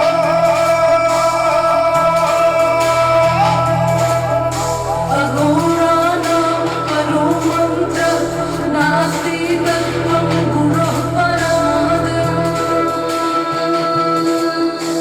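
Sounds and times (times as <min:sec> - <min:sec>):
devotional song drone and melody: 0:00.0 - 0:15.0
wordless singing: 0:00.0 - 0:15.0.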